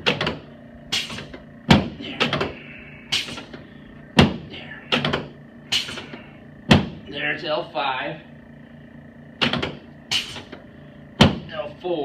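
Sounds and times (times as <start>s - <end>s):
chiropractic adjustment clacks and thuds: 0.0s - 0.4s, 1.0s - 2.6s, 4.2s - 6.0s, 6.7s - 7.0s, 9.4s - 10.6s, 11.2s - 11.5s.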